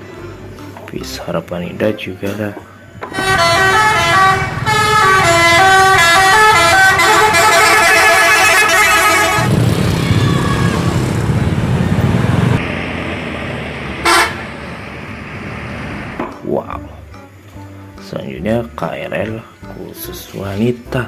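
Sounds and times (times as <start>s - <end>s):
engine rumble: 0.0s - 17.6s
short horn toot: 3.1s - 9.5s, 14.0s - 14.4s
bus musical horn melody: 3.1s - 9.6s, 14.0s - 14.5s.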